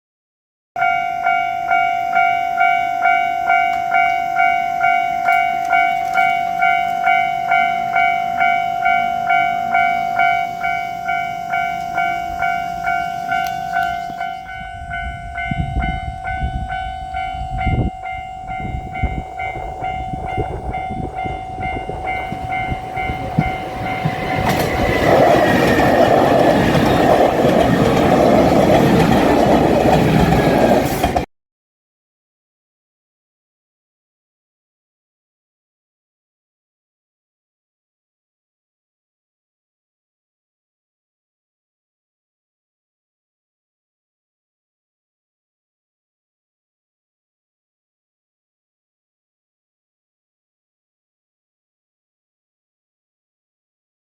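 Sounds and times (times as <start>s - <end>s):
railway crossing bell ringing: 0.8s - 31.0s
diesel train passing: 0.8s - 31.3s.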